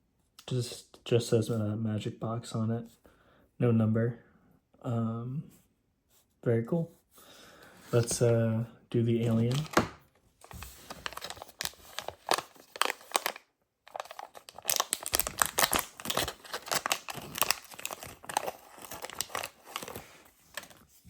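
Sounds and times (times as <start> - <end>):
plastic pack crinkling: 9.2 - 20.8.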